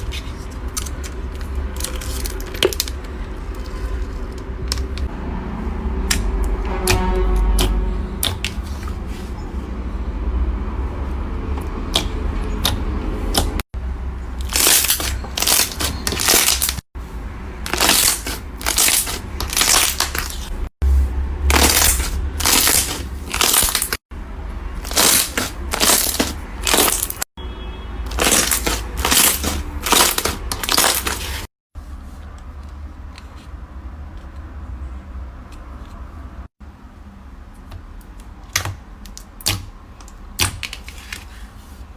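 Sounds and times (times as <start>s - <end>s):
slime crackling and crunching: 0.0s - 4.2s, 14.4s - 16.8s, 17.6s - 20.7s, 21.5s - 24.0s, 24.8s - 27.3s, 28.1s - 31.5s.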